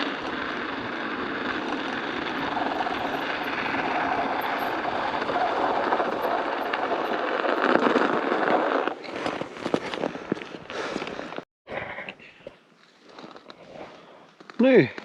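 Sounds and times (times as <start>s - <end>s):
studded tyres clattering on ice: 0.0s - 11.4s.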